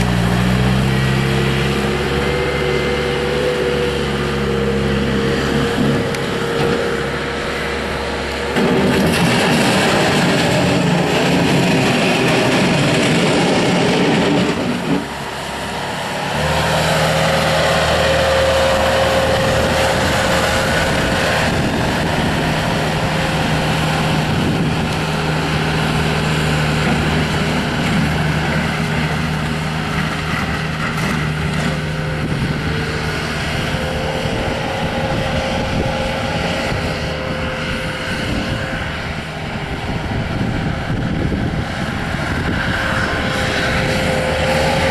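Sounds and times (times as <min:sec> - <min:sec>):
diesel engine droning: 0:00.0 - 0:44.9.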